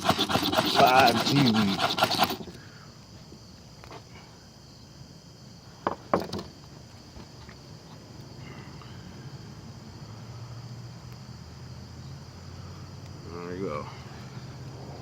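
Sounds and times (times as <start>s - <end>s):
fire steel scrapes: 0.0s - 2.6s
insects chirring: 0.0s - 15.0s.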